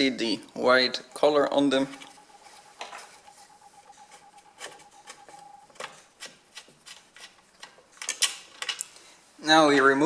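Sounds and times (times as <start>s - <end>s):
faint high tone: 1.1s - 5.8s
metal parts clicking and rubbing: 1.9s - 8.9s.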